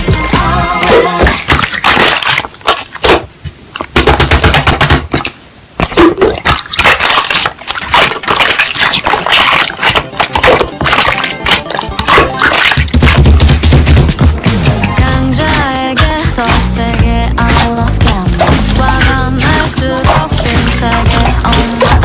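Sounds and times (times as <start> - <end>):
slime crackling and popping: 5.8 - 15.1.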